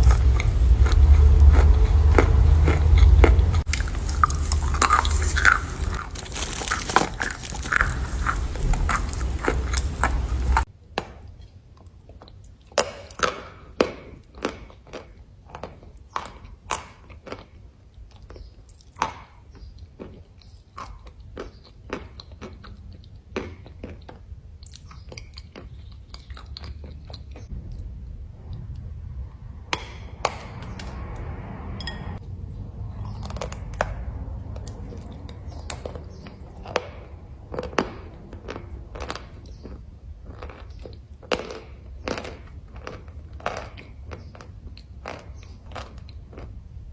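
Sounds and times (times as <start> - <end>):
person crunching chalk: 0.0 - 10.7.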